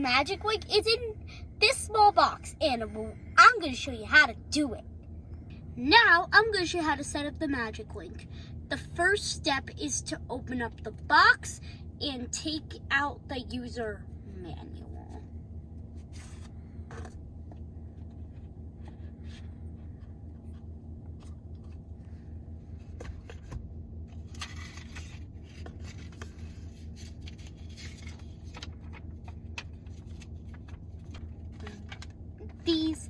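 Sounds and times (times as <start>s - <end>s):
steady low hum: 0.0s - 33.0s
paper and plastic rustling: 22.8s - 32.9s.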